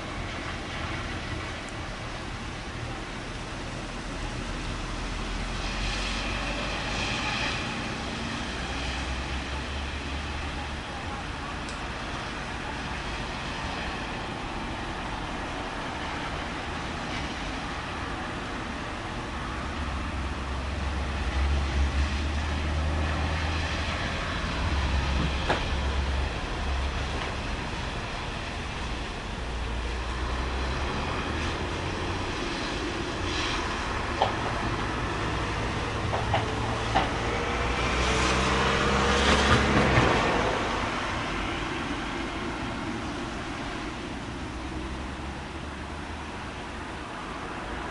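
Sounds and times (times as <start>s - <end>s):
storm hiss on city street: 0.0s - 47.9s
heavy vehicle passing: 16.3s - 47.9s.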